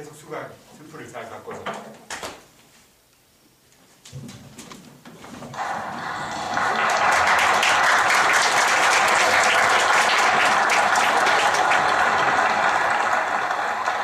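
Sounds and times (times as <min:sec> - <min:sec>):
audience applauding: 0:05.6 - 0:14.0.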